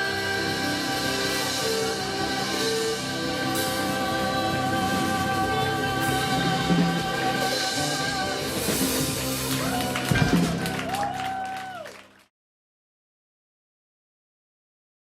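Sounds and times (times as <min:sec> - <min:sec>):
person singing: 0:00.0 - 0:11.1
instrumental accompaniment: 0:00.0 - 0:12.2.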